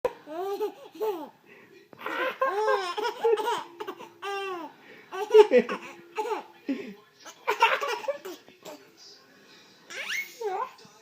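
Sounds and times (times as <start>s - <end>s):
baby laughing: 0.1s - 1.3s, 2.0s - 6.5s, 7.2s - 8.8s, 9.9s - 10.8s.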